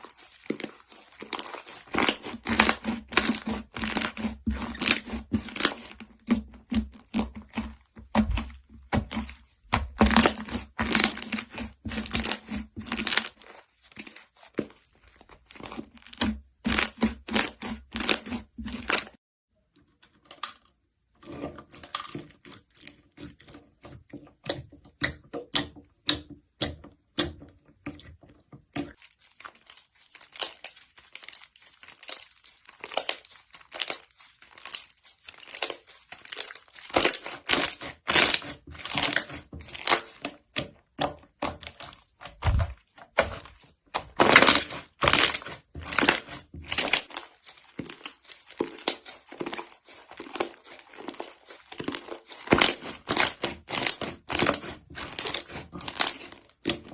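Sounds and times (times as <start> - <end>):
slime crackling and popping: 0.0 - 8.5, 28.9 - 56.9.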